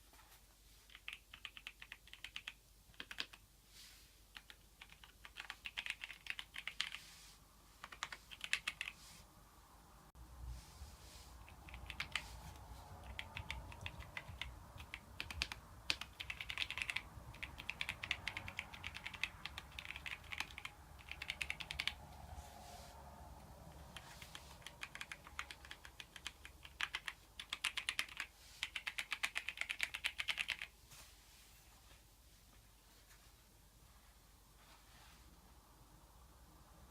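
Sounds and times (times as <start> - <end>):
mechanical keyboard typing: 0.9 - 3.4, 4.3 - 7.0, 7.8 - 9.0, 11.4 - 12.3, 13.0 - 22.0, 23.7 - 30.7.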